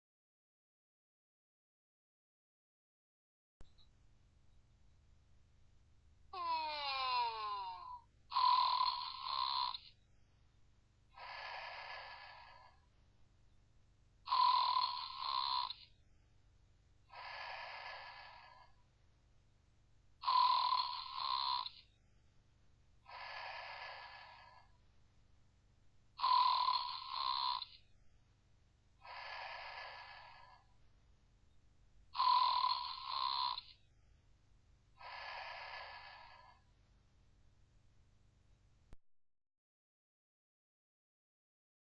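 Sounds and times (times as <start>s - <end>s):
person snoring: 6.3s - 10.0s, 11.1s - 12.9s, 14.2s - 16.0s, 17.1s - 18.8s, 20.2s - 22.0s, 23.0s - 24.8s, 26.2s - 27.9s, 29.0s - 30.8s, 32.1s - 33.9s, 34.9s - 36.8s.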